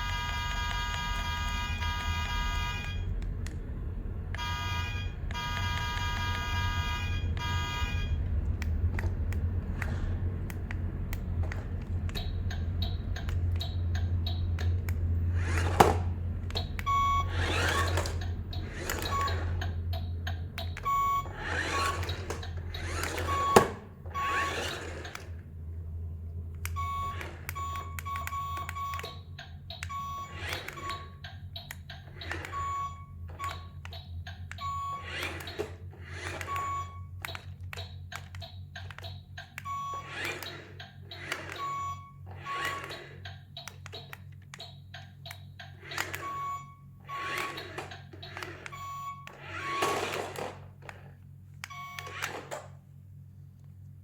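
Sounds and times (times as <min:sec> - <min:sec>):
buzzing horn-like tone: 0:00.0 - 0:03.2, 0:04.3 - 0:08.3
low electronic hum: 0:00.0 - 0:54.0
short beeps: 0:04.4 - 0:08.3, 0:46.2 - 0:46.9
sharp clicks: 0:08.3 - 0:23.8, 0:26.5 - 0:32.6, 0:36.4 - 0:41.7.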